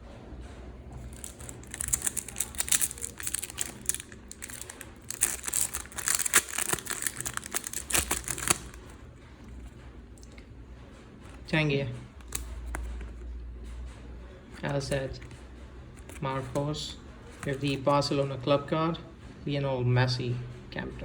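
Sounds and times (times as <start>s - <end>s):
card packet wrapper crinkling: 1.0s - 9.0s, 12.2s - 12.9s, 17.3s - 17.8s.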